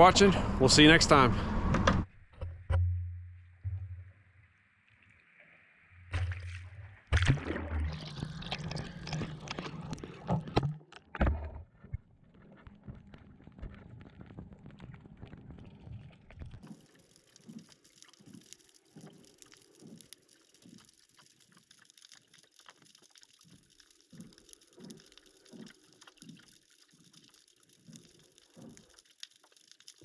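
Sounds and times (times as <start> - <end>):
water lapping and splashing: 4.8 - 30.0.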